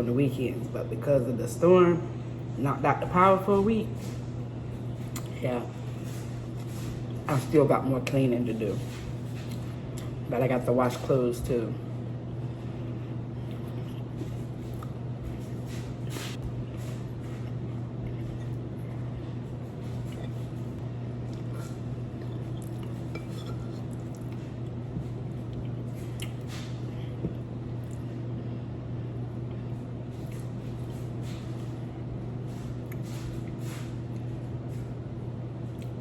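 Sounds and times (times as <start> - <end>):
steady low hum: 0.0 - 36.0
wet chewing: 5.1 - 5.4, 21.2 - 24.8.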